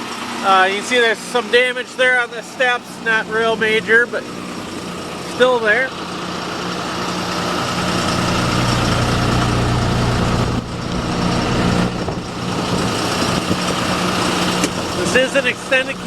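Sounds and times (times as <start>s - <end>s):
diesel engine idling: 0.0s - 16.0s.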